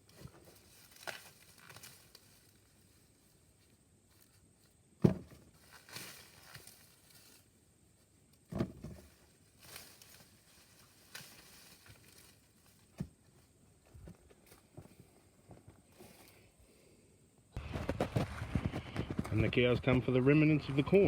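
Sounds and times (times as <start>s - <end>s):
dry leaves and husks rustling: 0.0s - 16.5s
corn ears snapping off stalks: 0.1s - 2.5s, 5.0s - 7.1s, 9.6s - 13.1s.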